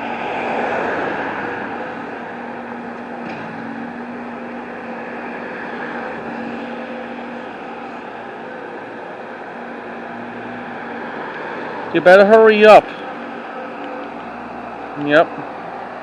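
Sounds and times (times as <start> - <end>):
engine hum and road noise: 0.0 - 16.0
vehicle passing close by: 0.0 - 16.0.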